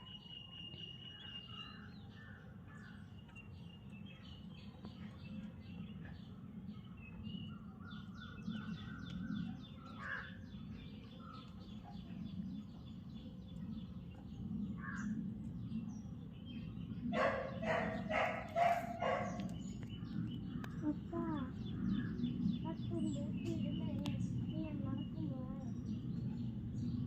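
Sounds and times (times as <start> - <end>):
birds chirping: 0.0 - 27.0
loud harsh bird calls: 7.8 - 10.6, 17.0 - 23.6.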